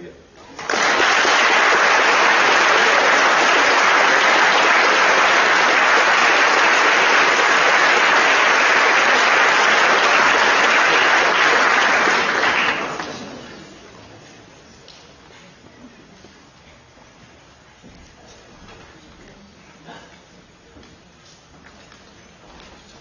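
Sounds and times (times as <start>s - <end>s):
audience applauding: 0.5s - 13.7s.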